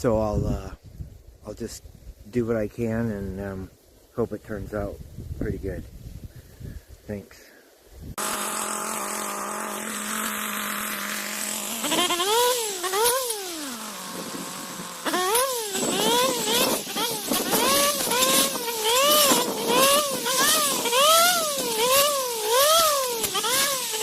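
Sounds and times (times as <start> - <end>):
brush cutter engine revving: 8.1 - 24.0.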